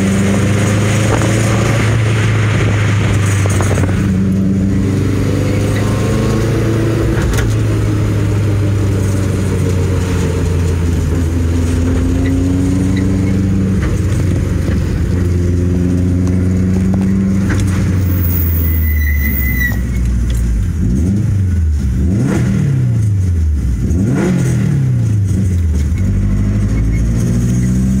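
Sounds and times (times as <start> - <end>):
car engine running: 0.0 - 18.8.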